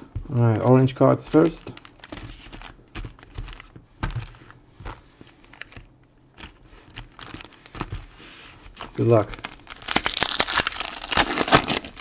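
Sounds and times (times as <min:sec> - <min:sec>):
cards tapping and clicking: 0:00.5 - 0:08.1
wrapper crinkling: 0:00.8 - 0:12.0.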